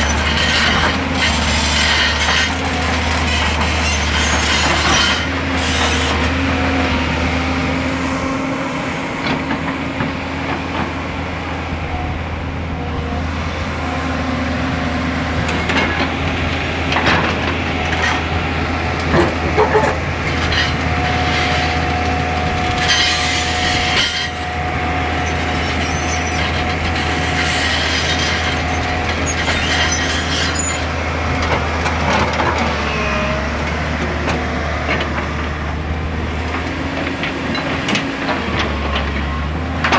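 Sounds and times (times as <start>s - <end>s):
clanks and scraping of stone: 0.0s - 6.2s, 19.0s - 21.6s, 25.3s - 32.8s
excavator diesel engine running: 0.0s - 39.9s.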